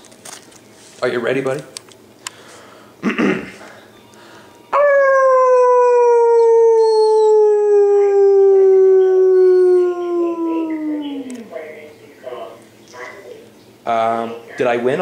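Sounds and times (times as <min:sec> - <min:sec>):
man imitating dog howl: 0:04.7 - 0:11.5.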